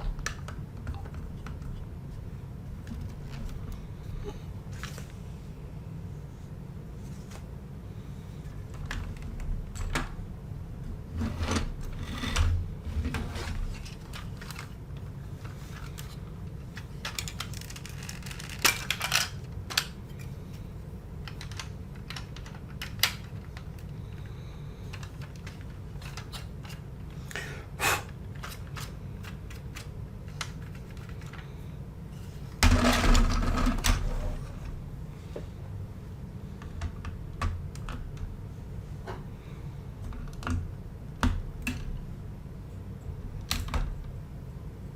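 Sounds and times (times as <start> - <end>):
plastic bricks clicking and clattering: 15.4 - 20.0.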